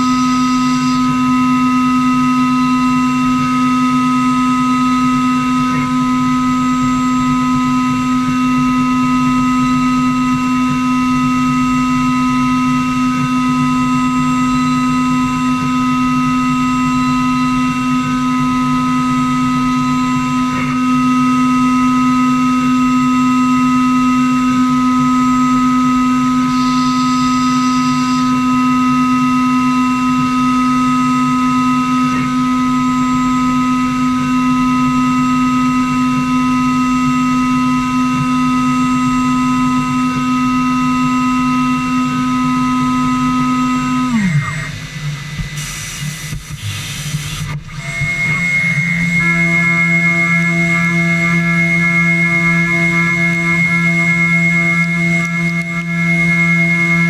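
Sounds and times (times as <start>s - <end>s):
router spindle whine and grinding: 0.0s - 57.0s.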